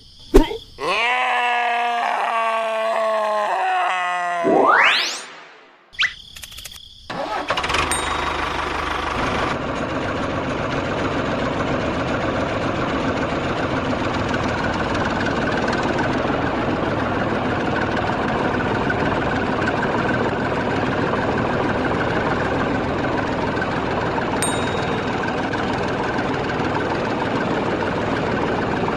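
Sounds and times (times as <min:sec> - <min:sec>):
engine starting and idling: 0:07.1 - 0:28.9.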